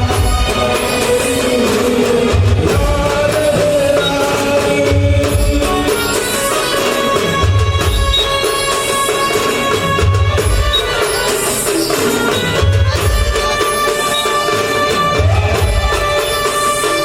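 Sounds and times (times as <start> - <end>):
deep drum beat: 0.0 - 6.1
band playing melody: 0.0 - 17.0.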